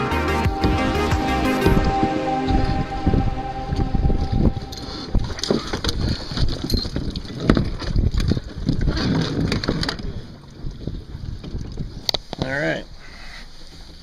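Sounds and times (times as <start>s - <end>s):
gusty wind buffeting microphone: 1.6s - 12.4s.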